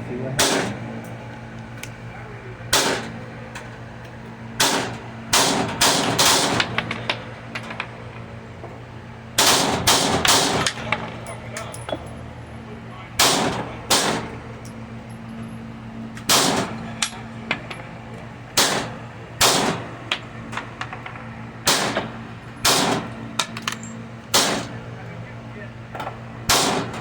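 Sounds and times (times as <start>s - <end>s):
steady low hum: 0.0s - 27.0s
pistol shots: 0.4s - 0.8s, 2.8s - 3.1s, 4.6s - 6.8s, 9.4s - 10.9s, 13.2s - 14.3s, 16.3s - 16.8s, 18.6s - 19.9s, 21.6s - 23.1s, 24.3s - 24.8s, 26.5s - 27.0s
distant gunshots: 18.6s - 19.8s, 21.6s - 23.1s, 24.3s - 24.7s, 26.5s - 27.0s.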